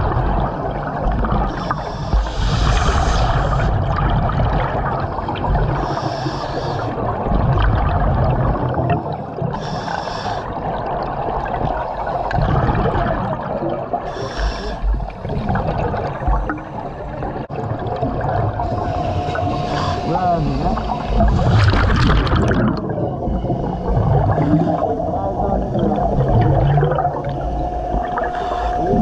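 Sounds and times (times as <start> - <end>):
rumble of water and bubbles: 0.0 - 29.0
diver breathing through helmet: 1.5 - 4.0, 5.2 - 7.1, 9.5 - 10.6, 14.1 - 15.6, 18.7 - 21.6, 28.1 - 29.0
hiss of air: 1.6 - 3.8.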